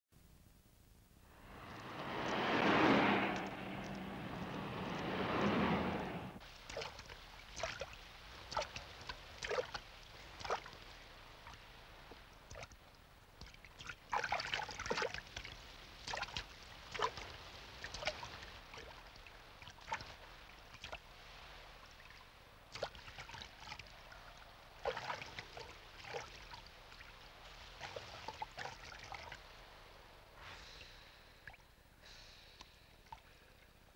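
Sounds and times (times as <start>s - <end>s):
wet sloshing sounds: 6.6s - 12.8s, 13.4s - 29.8s.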